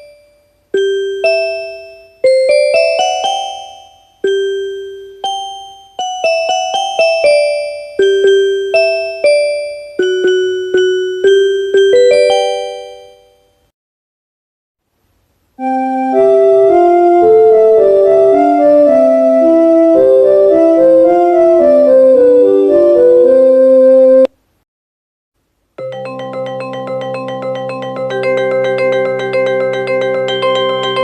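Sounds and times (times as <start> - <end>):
chime melody of held notes: 0.0 - 13.6, 25.8 - 31.0
bell-like train chime: 0.0 - 13.7, 25.8 - 31.0.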